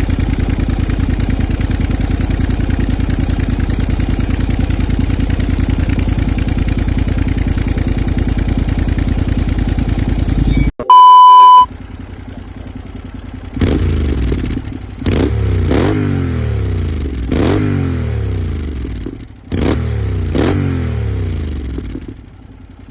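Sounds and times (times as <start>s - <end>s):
loud one-tone beep: 10.5s - 11.7s
motorcycle engine revving: 11.8s - 22.8s.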